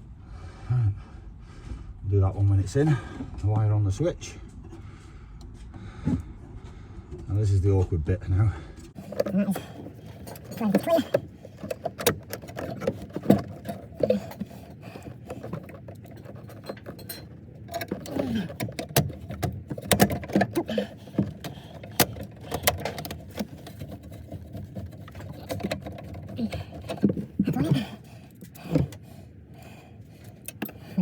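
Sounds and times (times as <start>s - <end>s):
tools clicking and clinking: 9.0s - 29.0s, 29.6s - 31.0s
person muttering: 27.4s - 28.0s.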